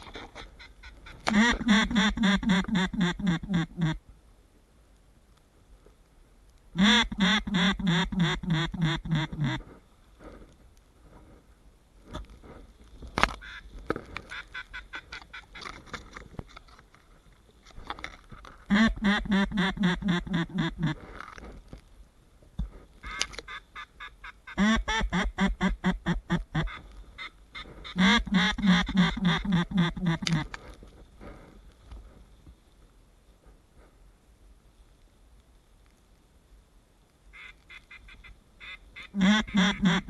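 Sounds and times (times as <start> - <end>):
ducks quacking: 0.3 - 4.0, 6.8 - 9.6, 18.7 - 21.0, 23.1 - 30.5, 37.4 - 40.0.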